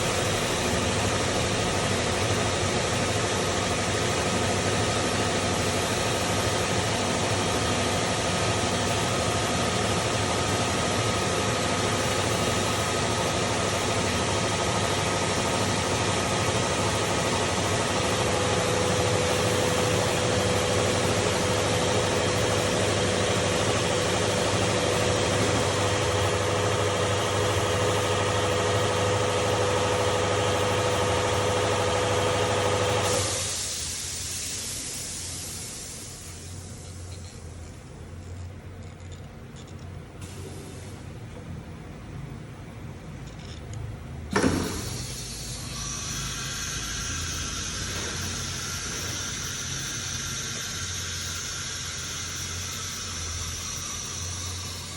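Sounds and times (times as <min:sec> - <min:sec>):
machine mechanical hum: 0:00.0 - 0:54.9
hiss: 0:15.4 - 0:26.4, 0:33.0 - 0:37.3, 0:40.2 - 0:41.1, 0:44.3 - 0:54.9
machine whining tones: 0:44.3 - 0:54.9.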